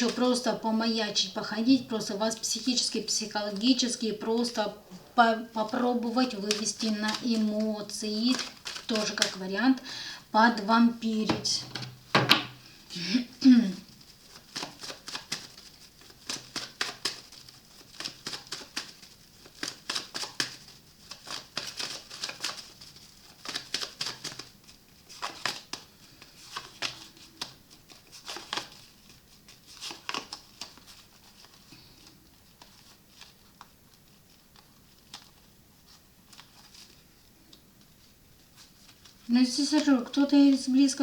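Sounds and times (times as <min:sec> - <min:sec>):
cards being shuffled: 0:05.6 - 0:09.4, 0:13.9 - 0:40.7.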